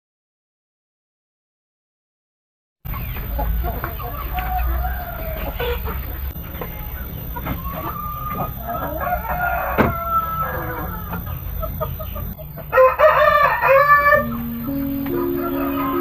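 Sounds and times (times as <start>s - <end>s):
chickens clucking: 2.9s - 16.0s
rooster crowing: 4.2s - 5.9s, 7.7s - 11.3s, 12.7s - 16.0s.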